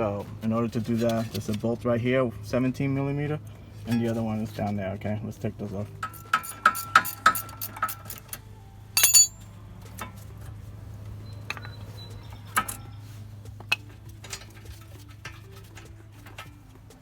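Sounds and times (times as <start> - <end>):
low steady hum: 0.0 - 17.0
sharp metal clank: 6.0 - 8.2, 9.0 - 9.4
metal tools clicking on bolts: 6.0 - 8.4, 9.0 - 9.4, 11.3 - 13.0.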